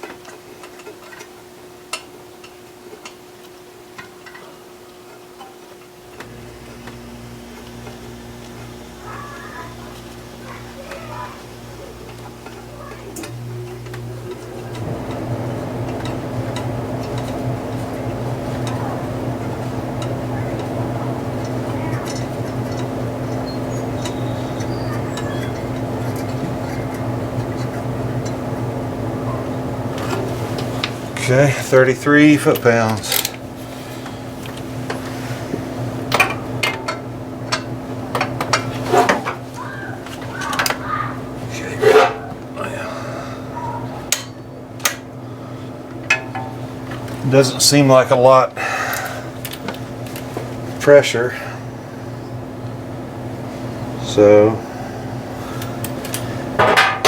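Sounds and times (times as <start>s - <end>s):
low steady hum: 1.9s - 57.0s
hand tools clinking on metal: 3.0s - 6.3s, 21.4s - 28.4s, 36.1s - 42.4s.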